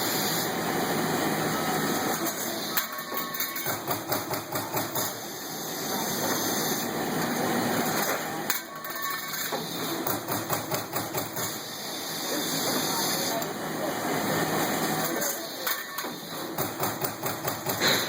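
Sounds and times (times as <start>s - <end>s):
steady machine noise: 0.0s - 18.0s
punch press punching sheet metal: 15.7s - 18.0s.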